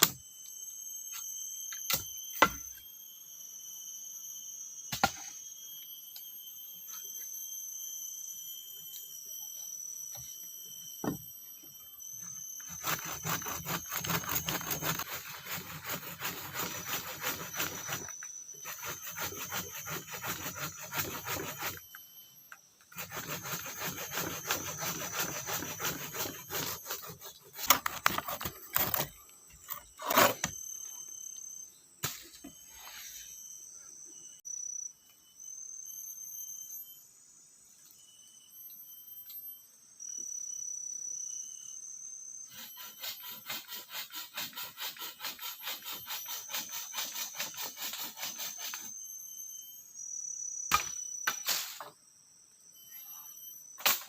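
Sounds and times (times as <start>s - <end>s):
insects buzzing: 0.0s - 54.0s
hand saw cutting wood: 12.6s - 21.8s, 22.9s - 29.1s, 29.7s - 30.5s, 42.6s - 48.9s.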